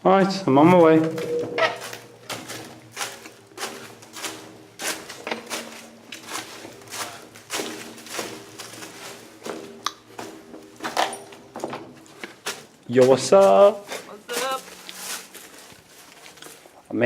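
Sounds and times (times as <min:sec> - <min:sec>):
footsteps on rough tunnel floor: 0:00.3 - 0:17.0.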